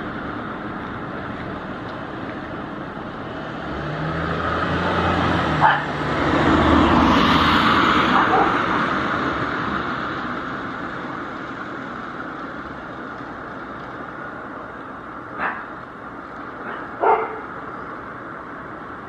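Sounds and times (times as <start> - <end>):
vehicle passing: 0.0 - 13.8.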